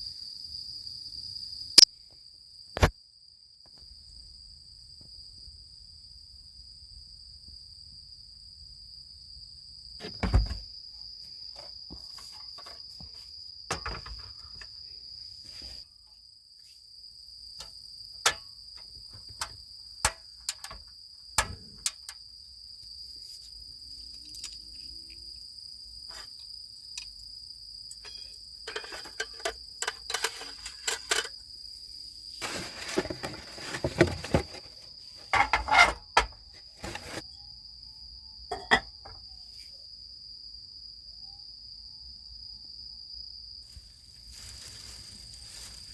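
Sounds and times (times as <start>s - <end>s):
crickets trilling: 0.0s - 45.9s
sharp clicks and knocks: 19.2s - 22.2s
clattering: 28.7s - 31.3s.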